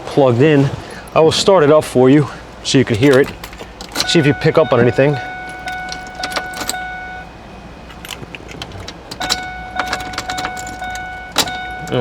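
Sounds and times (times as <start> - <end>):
keys jingling in ignition: 0.9 - 12.0
electronic warning chime: 4.0 - 7.9, 9.1 - 12.0.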